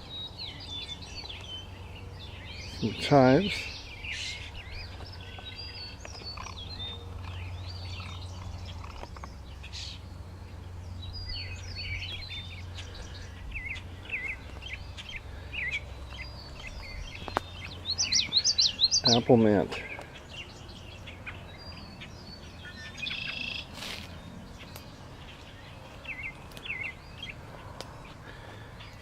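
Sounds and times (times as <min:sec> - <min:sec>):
low steady hum: 0:00.0 - 0:29.0
songbirds chirping and singing: 0:00.0 - 0:29.0.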